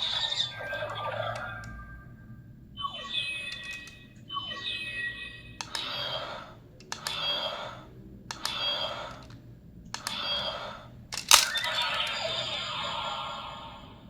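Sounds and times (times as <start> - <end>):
electronic toy sound effects: 0.0 - 1.9, 2.8 - 6.4, 11.2 - 13.4
toy device clicks: 3.4 - 4.1, 5.5 - 7.6, 8.3 - 10.5, 11.2 - 12.4
loud plastic clack: 11.2 - 12.1.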